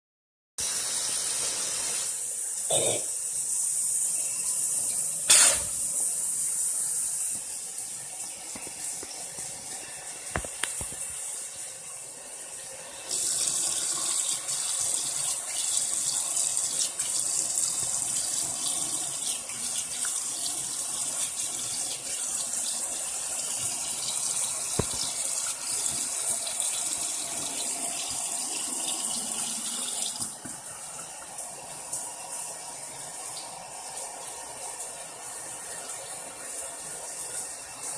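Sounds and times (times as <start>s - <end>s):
tap water splashing into basin: 10.3s - 11.3s, 23.5s - 26.6s, 29.9s - 30.6s.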